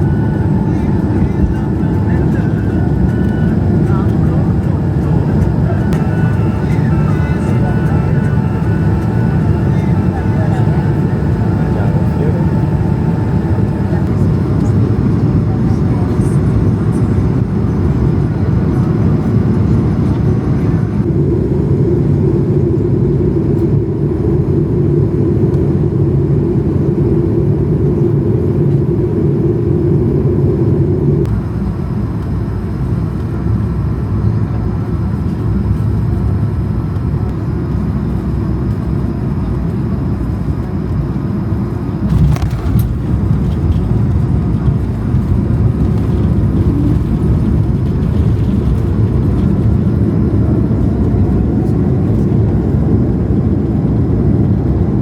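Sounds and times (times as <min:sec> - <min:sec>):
droning tone: 0:00.0 - 0:21.1
airliner cabin engine noise: 0:00.0 - 0:55.0.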